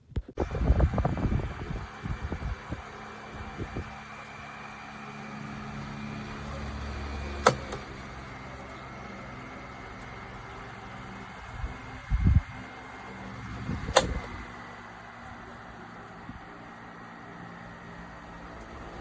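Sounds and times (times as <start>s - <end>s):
table fan humming: 0.0s - 19.0s
sharp click: 7.4s - 7.9s, 13.9s - 14.4s.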